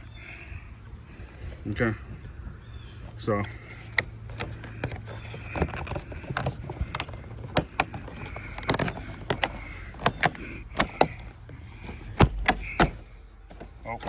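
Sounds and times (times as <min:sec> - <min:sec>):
siding panel clicking and snapping: 0:03.9 - 0:14.0.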